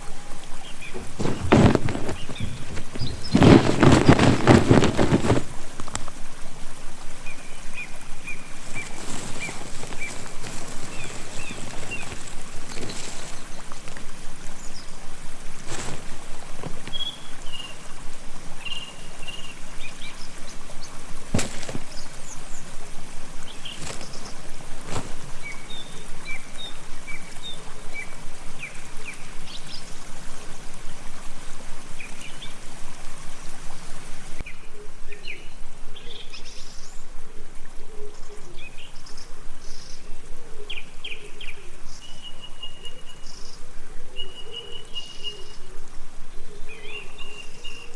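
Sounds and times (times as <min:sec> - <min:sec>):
small birds chirping: 0:00.0 - 0:31.0
trickling water: 0:00.0 - 0:34.6, 0:35.4 - 0:47.9.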